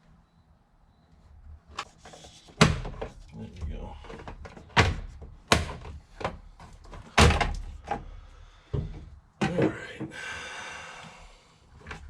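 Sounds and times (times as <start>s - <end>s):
plastic trim knocking and clunking: 2.6s - 3.2s, 4.1s - 8.1s, 8.7s - 9.8s.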